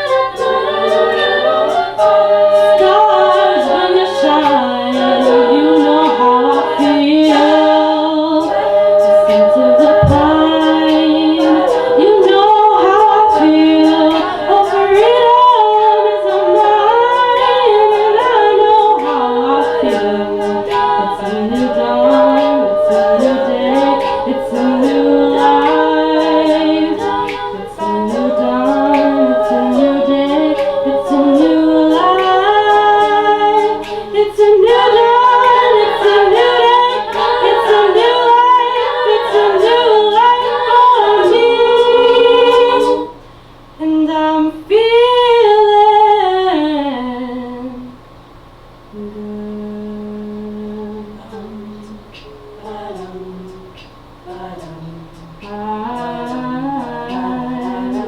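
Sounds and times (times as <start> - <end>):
sharp clicks keeping a beat: 0.0 - 43.4, 51.2 - 58.0
a cappella group singing in harmony: 0.0 - 58.0.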